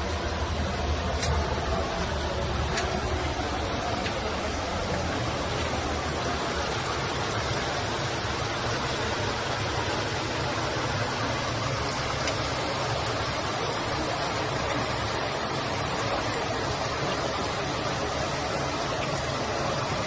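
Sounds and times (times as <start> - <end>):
river water rushing: 0.0 - 20.0.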